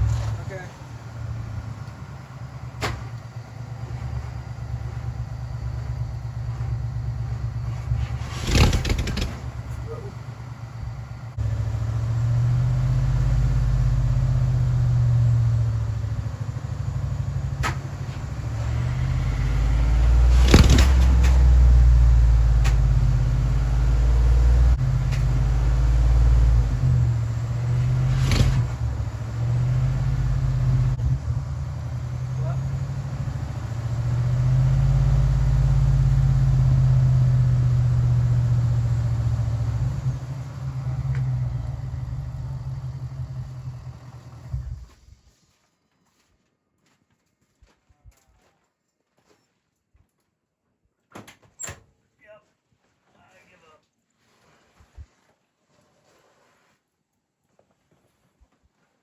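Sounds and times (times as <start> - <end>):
starter cranking engine: 0.0 - 44.9
sharp knocks or clanks: 7.8 - 10.2, 17.6 - 21.8.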